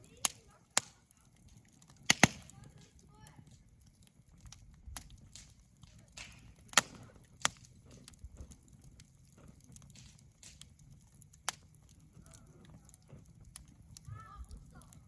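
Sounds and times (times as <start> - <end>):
wood fire crackling: 0.0 - 15.0
loud sharp pops: 1.9 - 3.6, 5.0 - 8.0.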